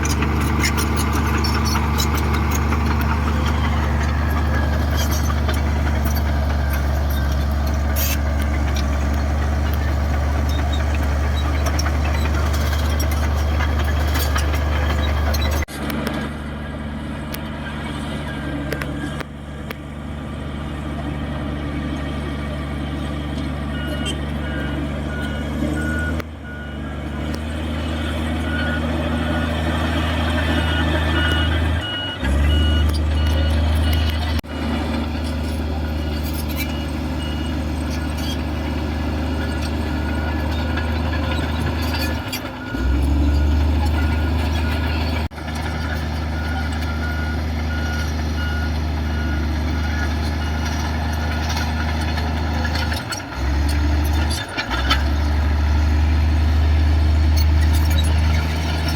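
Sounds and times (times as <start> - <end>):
heavy machine diesel engine: 0.0 - 58.9
reversing alarm beeping: 30.4 - 34.4, 46.3 - 50.9.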